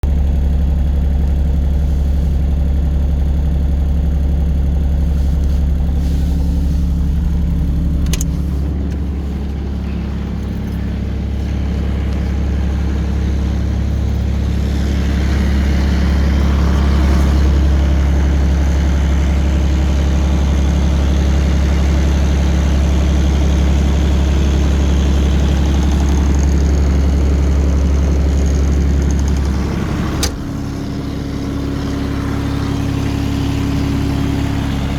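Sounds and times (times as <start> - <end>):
diesel engine running: 0.0 - 34.9
click: 8.0 - 8.3.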